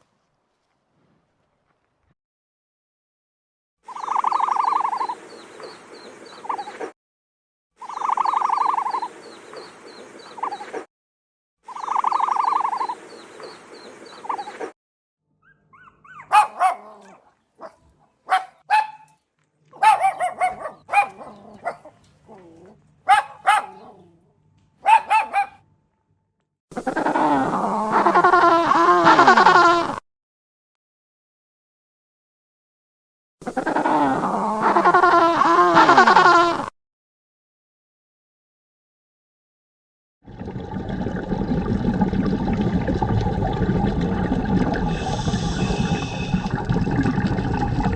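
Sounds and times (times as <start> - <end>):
dog yipping and barking: 15.4 - 24.2, 24.8 - 25.6
animal call: 15.4 - 25.6.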